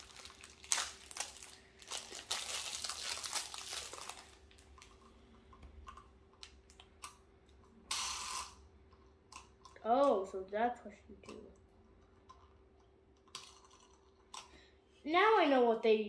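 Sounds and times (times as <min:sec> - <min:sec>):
plastic packaging crinkling: 0:00.0 - 0:05.1.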